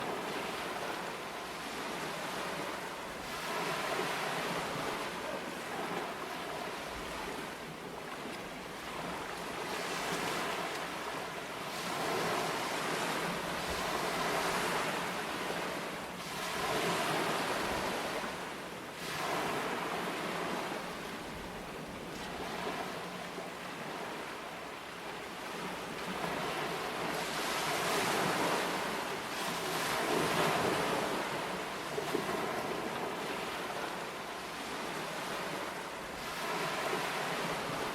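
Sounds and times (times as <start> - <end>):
ocean waves breaking: 0.0 - 37.9.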